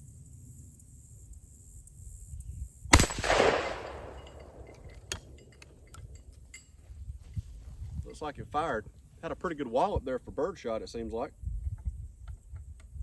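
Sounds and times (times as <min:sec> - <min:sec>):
shotgun shot: 0:02.9 - 0:05.4.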